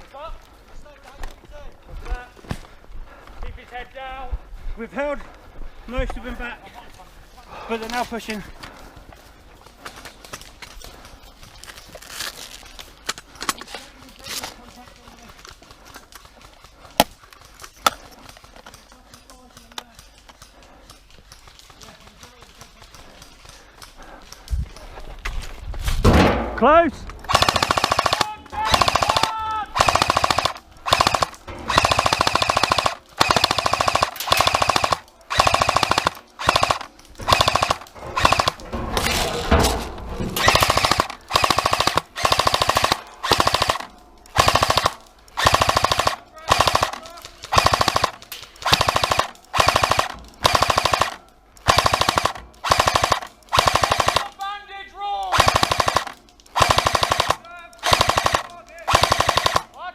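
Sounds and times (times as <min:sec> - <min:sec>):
airsoft gun firing bursts: 0:27.2 - 0:39.1, 0:40.4 - 0:54.4, 0:55.2 - 0:59.9.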